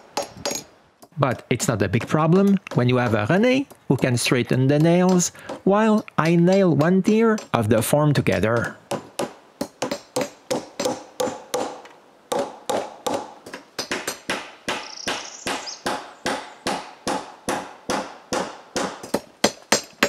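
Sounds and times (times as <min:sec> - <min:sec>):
hammer driving nails into wood: 0:08.3 - 0:20.0.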